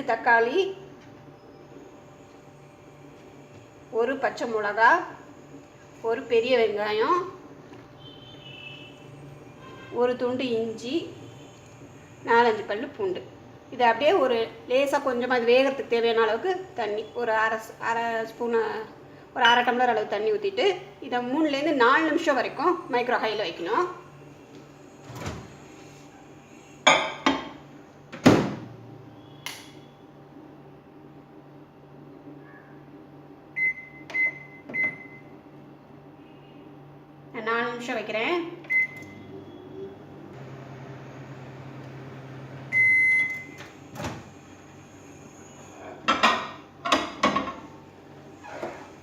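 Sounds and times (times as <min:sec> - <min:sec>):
microwave oven humming: 0:00.0 - 0:49.0
sharp click: 0:29.4 - 0:29.8.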